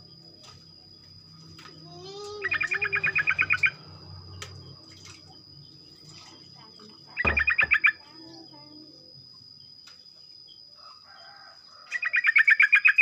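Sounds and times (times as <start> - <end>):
bulbul singing: 1.9 - 9.7.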